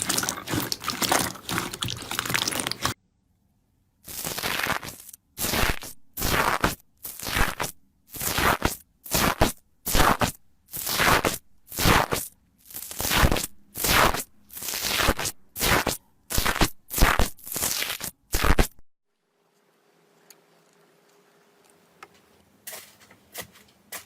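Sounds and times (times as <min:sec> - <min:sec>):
slime squelching by hand: 0:00.0 - 0:03.0.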